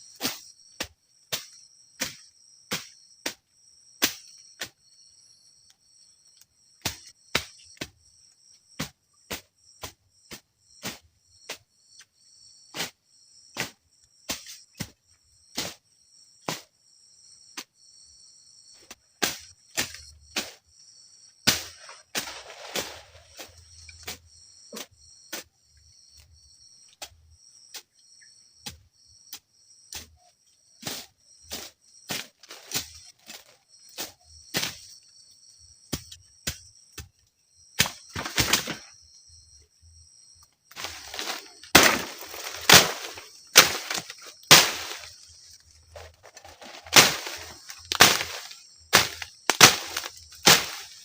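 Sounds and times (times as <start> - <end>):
forest insects chorus: 0.0 - 51.0
sharp knocks: 40.8 - 45.2, 46.0 - 51.0.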